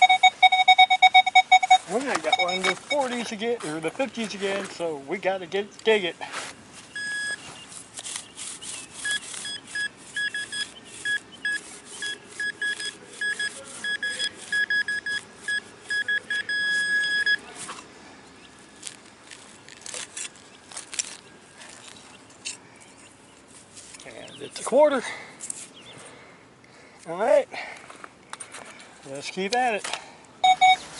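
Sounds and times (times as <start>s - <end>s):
pinpointer beeping: 0.0s - 3.2s, 6.9s - 7.6s, 9.0s - 17.4s, 30.4s - 30.8s
digging in soil: 1.7s - 26.1s.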